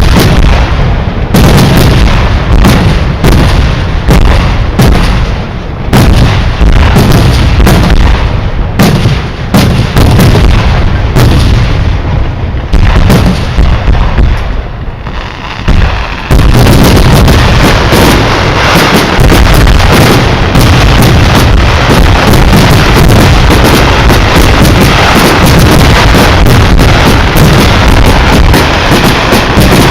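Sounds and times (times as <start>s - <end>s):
fireworks bursting with loud bangs: 0.0s - 29.9s
fireworks crackle: 0.0s - 29.9s.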